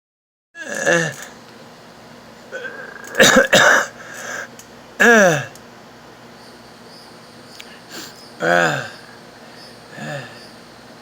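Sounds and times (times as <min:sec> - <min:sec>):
harsh whistling breathing: 0:07.6 - 0:10.6.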